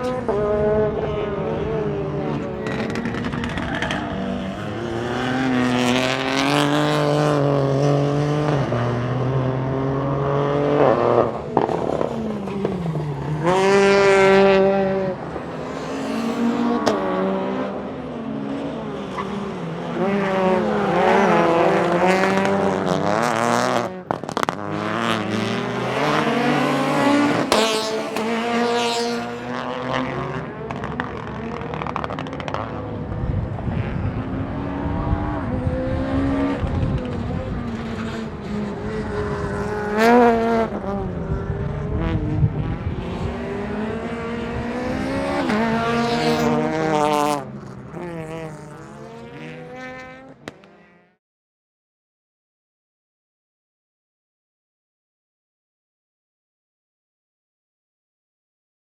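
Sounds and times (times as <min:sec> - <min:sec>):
exhaust pops and crackles: 0:02.6 - 0:04.2, 0:24.0 - 0:24.8, 0:30.6 - 0:32.9, 0:50.4 - 0:50.9
car engine revving hard: 0:20.0 - 0:32.6.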